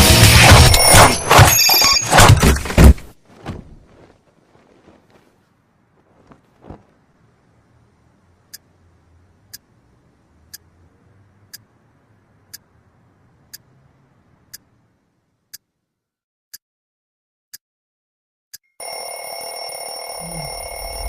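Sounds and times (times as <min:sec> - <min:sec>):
faint background hiss: 0:04.5 - 0:15.5
clock ticking: 0:09.5 - 0:09.7, 0:10.5 - 0:10.7, 0:11.5 - 0:11.7, 0:12.5 - 0:12.7.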